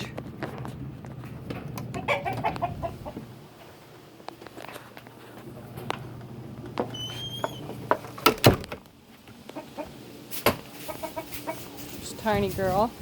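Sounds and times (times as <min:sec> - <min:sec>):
chickens clucking: 0:01.7 - 0:03.7, 0:09.3 - 0:12.0.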